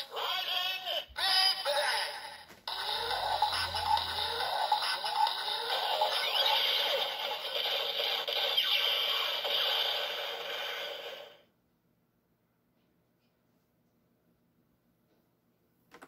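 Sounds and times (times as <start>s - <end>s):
toy belt electronic sound effects: 0.0s - 11.4s.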